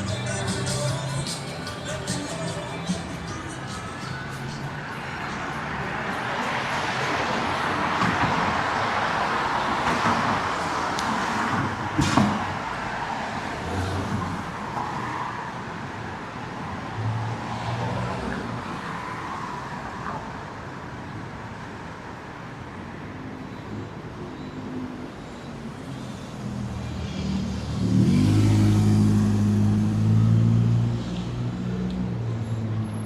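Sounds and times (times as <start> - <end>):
traffic hum: 0.0 - 33.0
car passing: 26.4 - 32.2.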